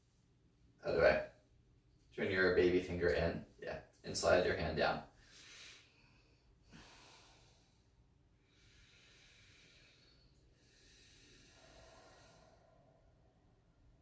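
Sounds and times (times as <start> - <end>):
faint slow breathing: 5.1 - 14.0.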